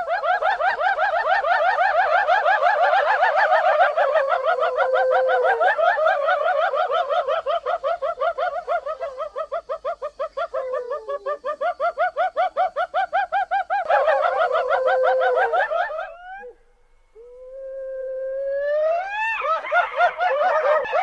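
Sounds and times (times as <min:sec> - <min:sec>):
hyena giggling whoops: 0:17.2 - 0:21.0.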